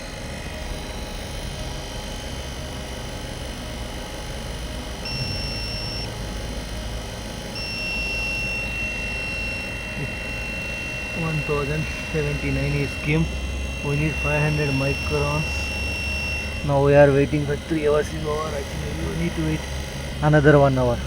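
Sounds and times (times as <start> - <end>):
vacuum pump humming: 0.0 - 21.0
high electronic tone: 4.8 - 21.0.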